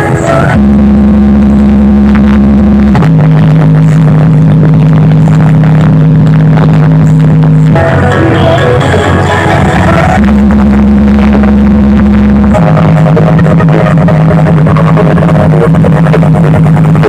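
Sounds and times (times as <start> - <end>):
loud held bass tone from speakers: 0.0 - 17.0.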